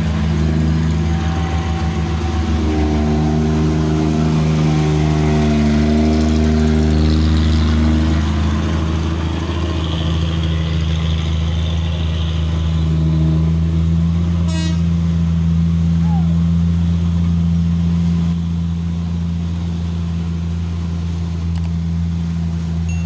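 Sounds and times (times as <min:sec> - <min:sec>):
higher engine note: 0:00.0 - 0:23.0
vehicle engines droning: 0:00.0 - 0:23.0
short horn beep: 0:14.5 - 0:14.9.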